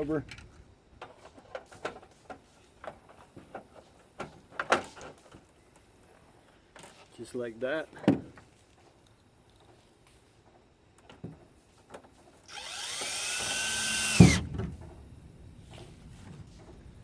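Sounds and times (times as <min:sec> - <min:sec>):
power drill whining: 0:12.5 - 0:14.5.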